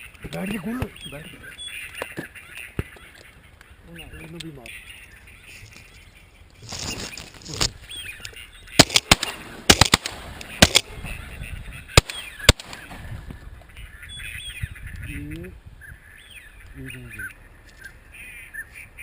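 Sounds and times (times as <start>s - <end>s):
ducks quacking and honking: 0.0s - 9.6s, 10.4s - 19.0s
shotgun shots: 8.7s - 11.2s, 11.9s - 13.1s.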